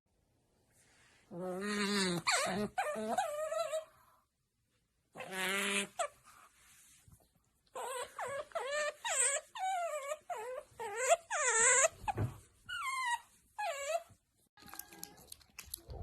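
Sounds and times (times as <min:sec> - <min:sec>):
otter whining cries: 0:07.7 - 0:14.1.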